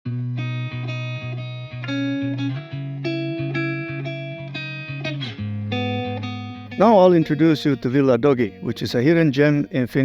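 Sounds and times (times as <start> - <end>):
background music melody: 0.1 - 10.0.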